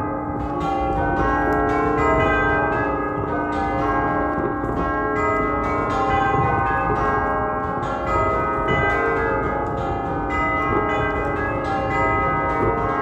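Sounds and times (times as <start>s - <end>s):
tubular church bells playing tune: 0.0s - 13.0s.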